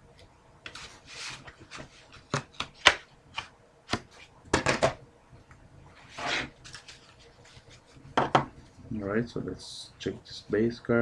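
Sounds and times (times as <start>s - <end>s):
cards sliding rub: 0.7s - 4.3s, 6.0s - 7.9s.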